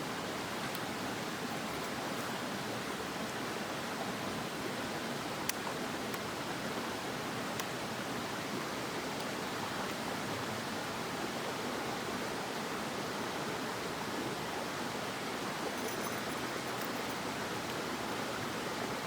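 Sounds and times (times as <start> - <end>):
stream water rushing: 0.0 - 19.0
faint light ticks: 0.6 - 0.9, 5.4 - 6.3, 7.5 - 7.8.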